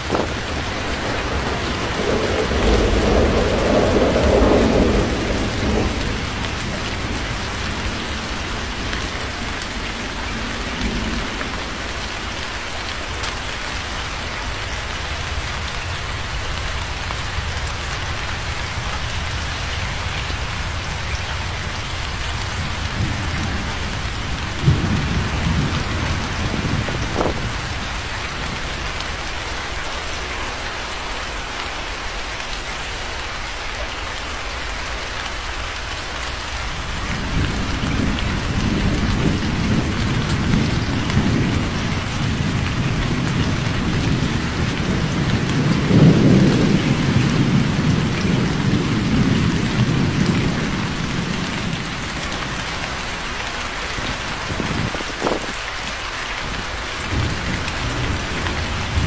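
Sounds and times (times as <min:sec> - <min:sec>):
thunder crack: 0:00.0 - 0:12.3, 0:18.9 - 0:28.9, 0:36.8 - 0:52.2, 0:57.1 - 0:59.0
low rumble of thunder: 0:00.0 - 0:31.4, 0:33.8 - 0:59.0
steady rain falling: 0:00.0 - 0:59.0.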